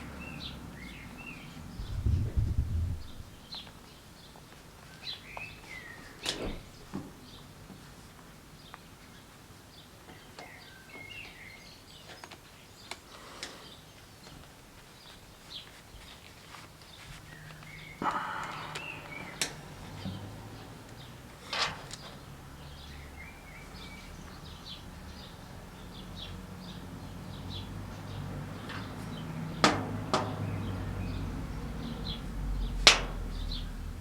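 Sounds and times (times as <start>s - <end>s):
small birds chirping: 0.0s - 29.7s
rushing noise: 17.8s - 21.3s.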